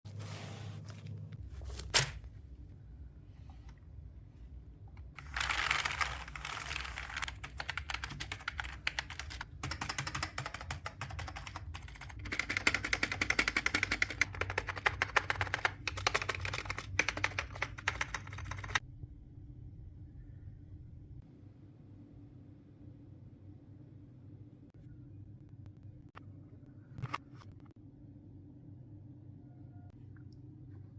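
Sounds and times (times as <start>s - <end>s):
rapid soft keyboard typing: 5.1s - 18.8s.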